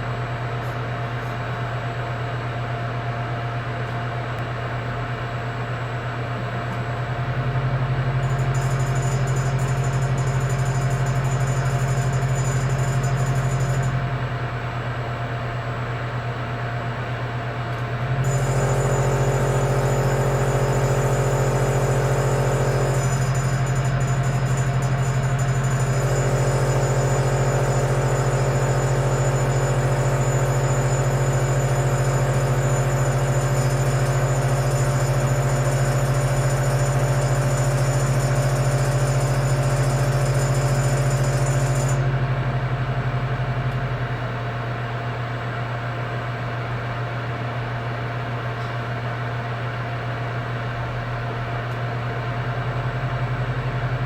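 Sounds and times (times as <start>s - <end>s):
oven fan humming: 0.0s - 54.0s
high whine: 18.1s - 37.1s.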